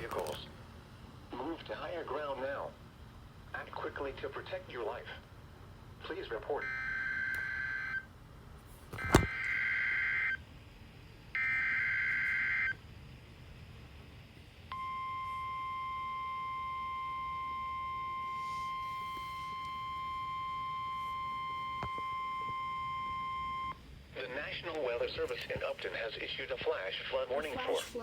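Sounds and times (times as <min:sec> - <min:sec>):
steady warning alarm tone: 0:06.6 - 0:08.1, 0:09.2 - 0:10.5, 0:11.3 - 0:13.0, 0:14.7 - 0:23.8.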